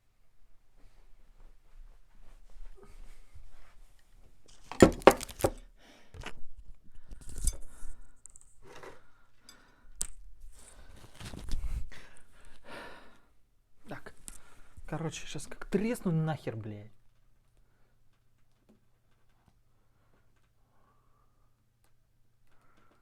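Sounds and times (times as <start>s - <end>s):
objects clattering and rustling: 4.4s - 5.6s.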